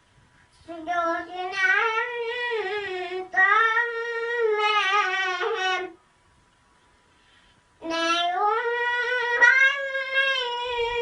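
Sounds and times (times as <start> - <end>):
child chanting: 0.7 - 6.0, 7.8 - 11.0.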